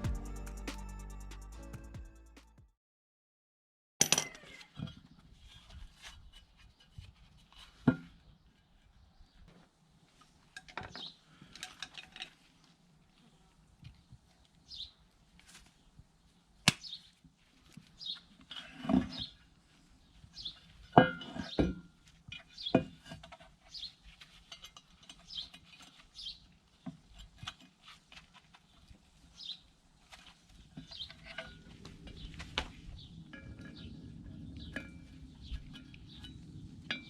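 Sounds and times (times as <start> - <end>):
metal tools knocking and clinking: 4.0 - 4.5.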